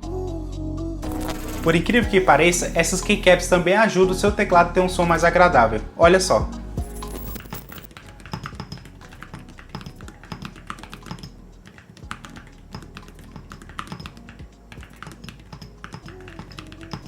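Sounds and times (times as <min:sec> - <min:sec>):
mechanical keyboard typing: 0:07.3 - 0:17.0.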